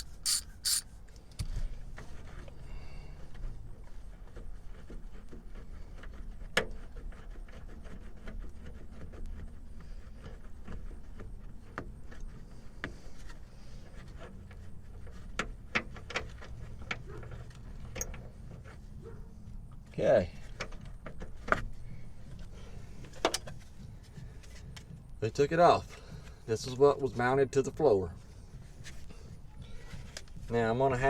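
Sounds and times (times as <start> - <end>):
socket wrench clicking: 0.0 - 0.8.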